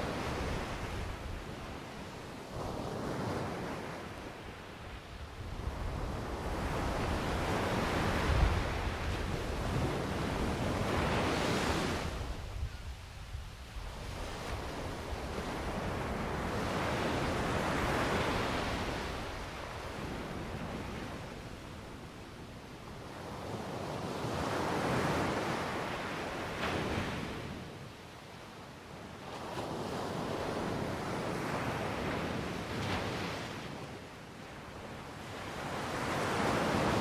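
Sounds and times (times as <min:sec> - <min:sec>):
wind rumbling on microphone: 0:05.0 - 0:22.0.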